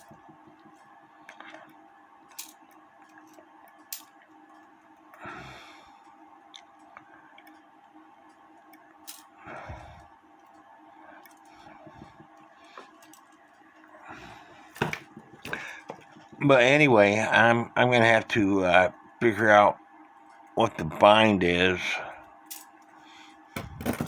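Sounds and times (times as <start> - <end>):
low steady hum: 0.0 - 24.0
small metal parts clicking: 2.3 - 4.2, 9.0 - 9.3, 13.0 - 13.4, 22.5 - 22.8.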